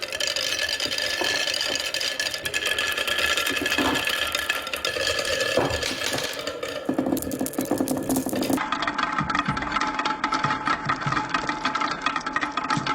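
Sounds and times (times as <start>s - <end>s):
marbles clinking in spinning drum: 0.0s - 8.6s.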